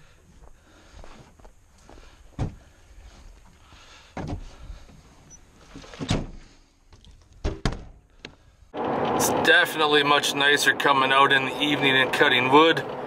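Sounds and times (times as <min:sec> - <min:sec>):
knocks and thuds: 0:07.4 - 0:08.0.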